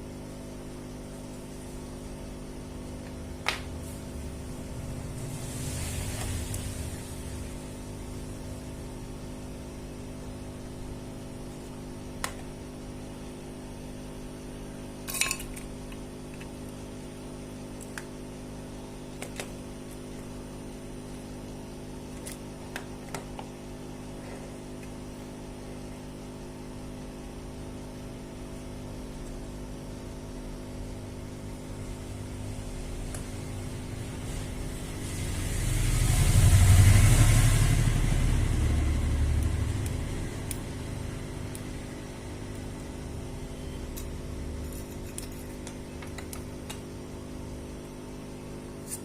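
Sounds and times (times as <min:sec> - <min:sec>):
low electrical hum: 0:00.0 - 0:49.0
small tools clicking and clinking: 0:15.1 - 0:15.7, 0:43.9 - 0:46.4.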